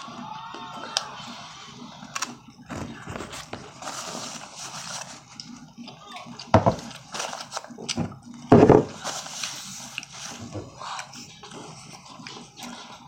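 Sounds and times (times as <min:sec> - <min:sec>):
chewing and smacking food: 0:02.9 - 0:08.5, 0:09.4 - 0:13.0.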